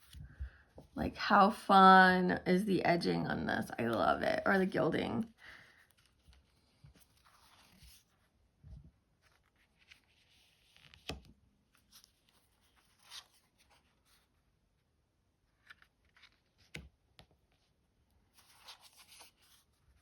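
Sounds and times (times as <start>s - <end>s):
cards sliding and brushing: 5.8s - 8.2s.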